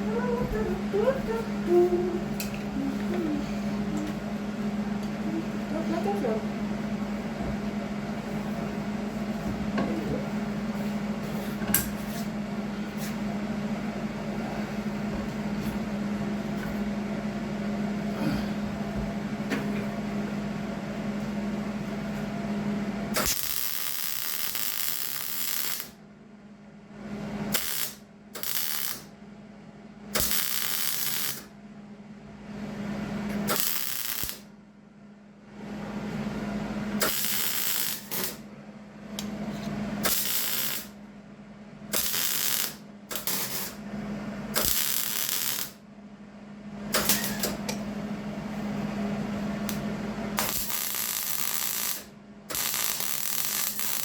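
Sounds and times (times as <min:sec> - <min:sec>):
welder humming: 0:00.0 - 0:12.3, 0:23.1 - 0:26.0, 0:27.5 - 0:29.1, 0:30.1 - 0:31.5, 0:33.3 - 0:34.5, 0:36.1 - 0:38.5, 0:39.2 - 0:41.0, 0:41.9 - 0:45.8, 0:46.9 - 0:47.9, 0:48.5 - 0:54.0
welding arc sizzle: 0:23.1 - 0:26.0, 0:27.4 - 0:29.1, 0:30.1 - 0:31.5, 0:33.4 - 0:34.5, 0:36.9 - 0:38.4, 0:40.0 - 0:41.0, 0:41.9 - 0:43.9, 0:44.5 - 0:45.8, 0:46.9 - 0:47.7, 0:49.6 - 0:54.0.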